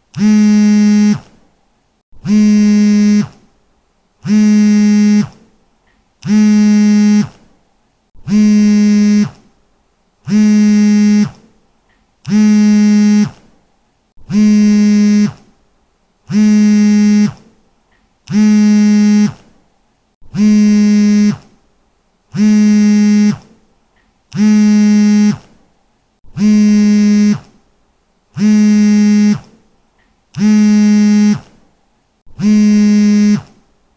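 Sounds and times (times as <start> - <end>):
mobile phone vibrating buzz: 0.1 - 1.4, 2.2 - 3.5, 4.2 - 5.4, 6.2 - 7.4, 8.2 - 9.5, 10.2 - 11.5, 12.3 - 13.4, 14.2 - 15.5, 16.3 - 17.5, 18.3 - 19.4, 20.2 - 21.6, 22.3 - 23.6, 24.3 - 25.5, 26.3 - 27.5, 28.4 - 29.6, 30.4 - 31.5, 32.3 - 33.6.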